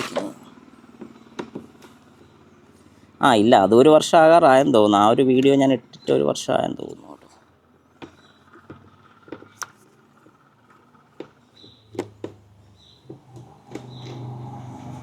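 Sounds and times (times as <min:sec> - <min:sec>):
short high squeaks: 0:12.8 - 0:15.0.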